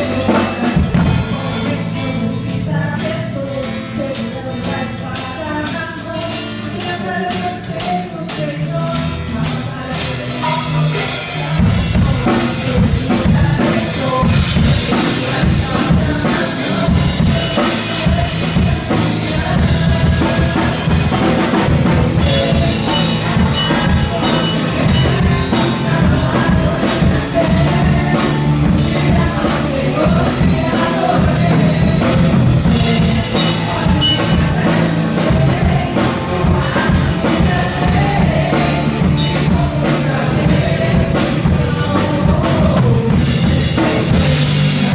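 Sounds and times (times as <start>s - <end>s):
bass guitar: 0.0s - 44.9s
drum kit beat: 0.0s - 44.9s
person singing: 0.0s - 44.9s
worship band playing: 0.0s - 44.9s.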